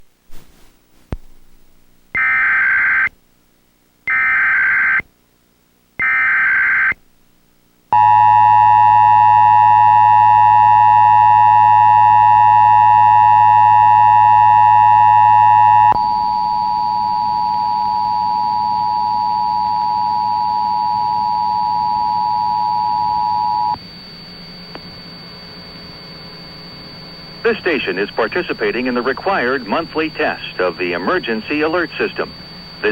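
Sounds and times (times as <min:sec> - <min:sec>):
faint hiss and hum: 0:00.0 - 0:32.9
quieter steady tone: 0:07.9 - 0:32.9.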